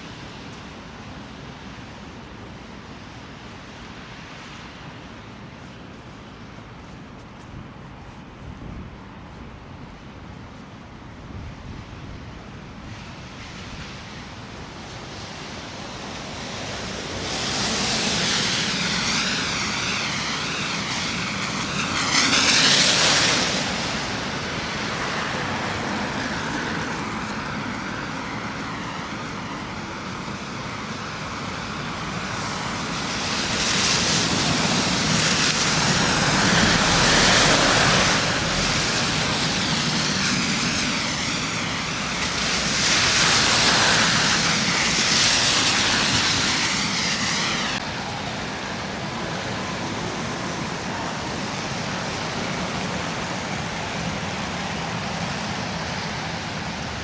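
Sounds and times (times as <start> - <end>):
road traffic passing: 14.8 - 29.9, 31.4 - 57.0.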